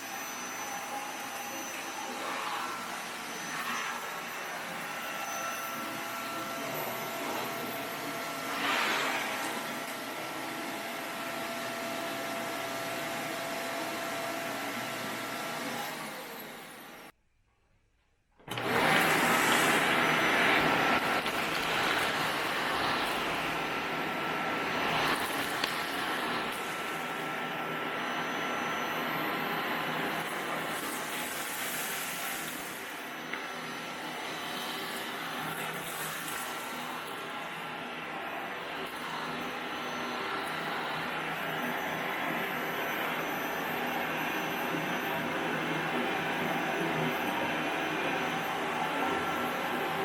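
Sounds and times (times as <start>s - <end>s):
vacuum cleaner whine: 0.0s - 17.2s, 18.4s - 50.0s.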